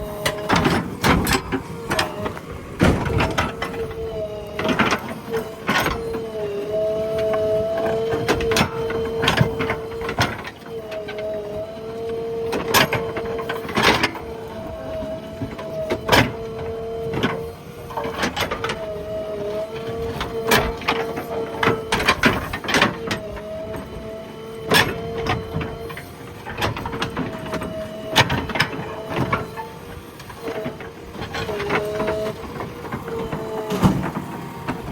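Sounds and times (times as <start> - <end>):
backhoe loader engine whine: 0.0 - 34.9
metal clanks and knocks: 0.2 - 6.1, 30.4 - 34.9.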